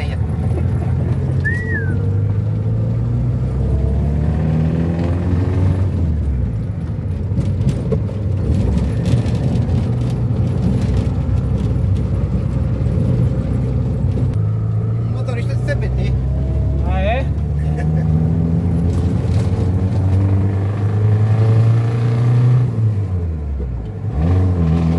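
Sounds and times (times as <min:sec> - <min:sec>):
road noise: 0:00.0 - 0:24.9
car engine running: 0:05.1 - 0:20.7.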